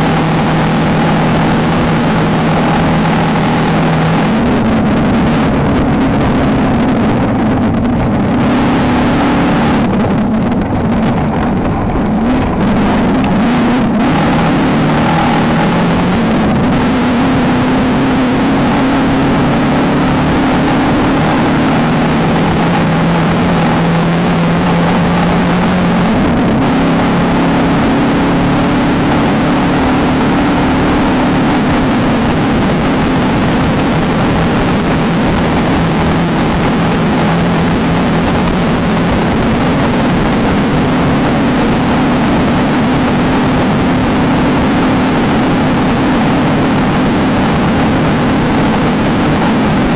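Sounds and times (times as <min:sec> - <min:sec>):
loud rushing noise: 0:00.0 - 0:49.9
race car engine running hard: 0:00.0 - 0:49.9.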